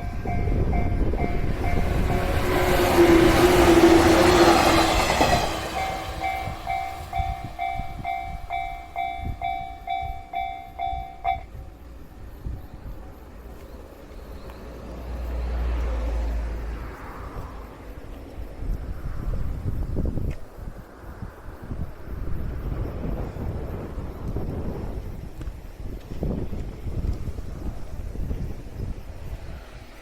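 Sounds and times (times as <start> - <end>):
crossing warning bell ringing: 0.0 - 13.6
train passing: 0.0 - 30.0.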